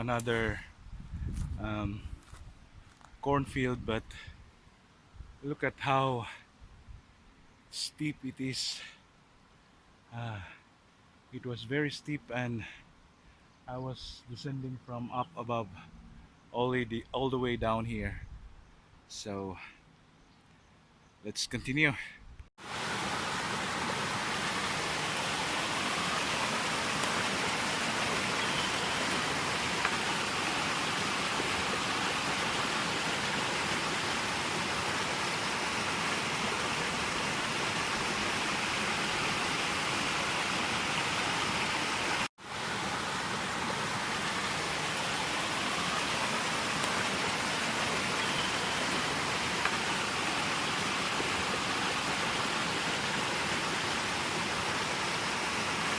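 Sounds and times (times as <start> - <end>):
small waterfall rushing: 22.6 - 55.9.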